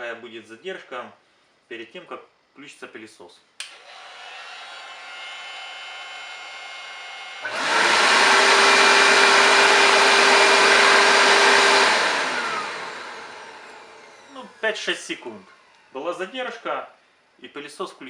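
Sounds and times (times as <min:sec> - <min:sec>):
heat gun hum: 0:03.6 - 0:15.9
vacuum cleaner motor running: 0:03.7 - 0:15.9.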